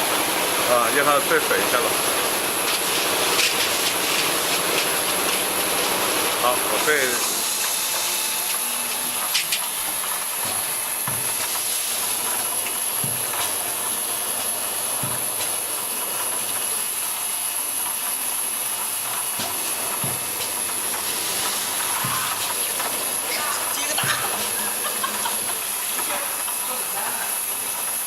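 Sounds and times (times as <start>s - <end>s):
spraying jets hissing: 19.5s - 27.5s.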